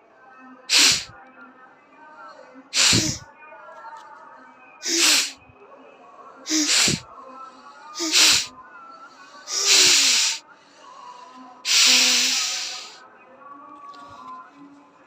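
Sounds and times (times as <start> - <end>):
person sneezing: 0.7 - 1.1, 2.8 - 3.2, 4.8 - 5.4, 6.5 - 7.0, 8.0 - 8.5, 9.5 - 10.4, 11.7 - 13.0.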